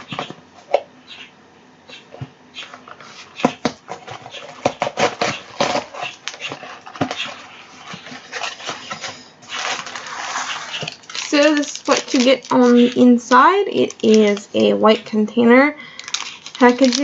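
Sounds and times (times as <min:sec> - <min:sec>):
cardboard packaging crackling: 0:03.9 - 0:07.4, 0:08.0 - 0:14.6, 0:15.9 - 0:17.0.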